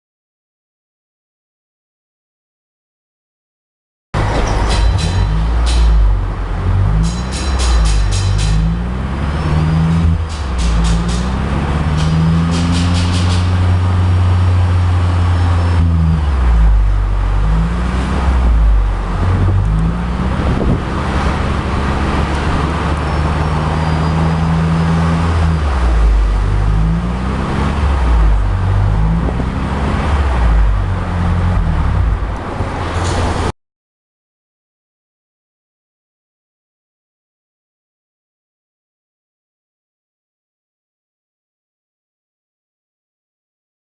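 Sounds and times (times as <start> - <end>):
car engine exhaust note: 4.2 - 33.1.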